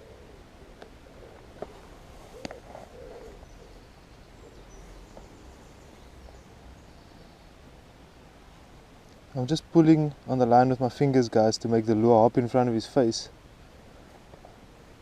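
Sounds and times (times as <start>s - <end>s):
soft bird calls: 0.0s - 9.3s
outdoor background noise: 0.0s - 15.0s.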